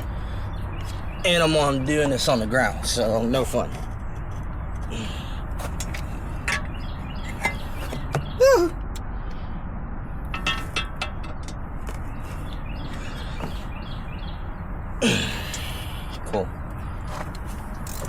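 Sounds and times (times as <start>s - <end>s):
tools and parts clicking: 17.8s - 18.0s.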